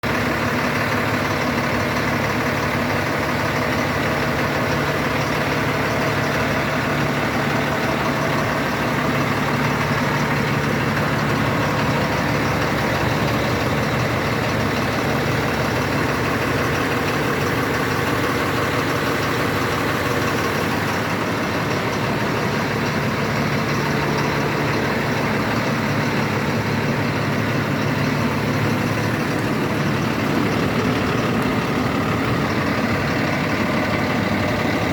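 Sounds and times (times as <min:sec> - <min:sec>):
diesel engine idling: 0:00.0 - 0:34.9.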